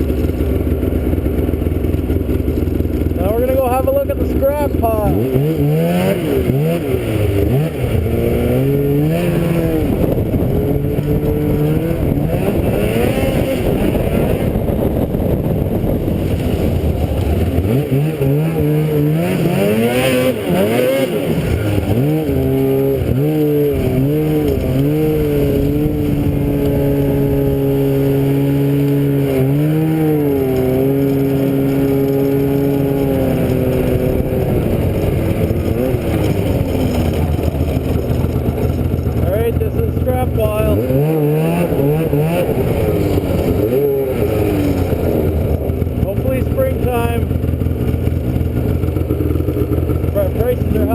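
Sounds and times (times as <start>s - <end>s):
small vehicle engine running: 0.0s - 50.9s.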